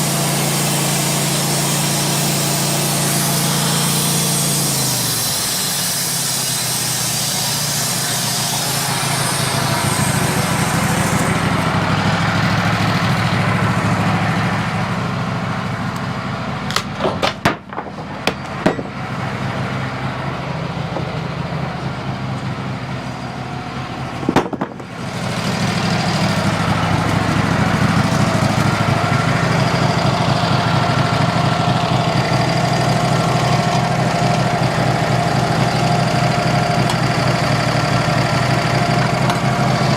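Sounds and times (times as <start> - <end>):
saw hissing through log: 0.0 - 16.1, 24.9 - 39.9
bandsaw mill running: 0.0 - 39.9
high whine: 7.2 - 16.8.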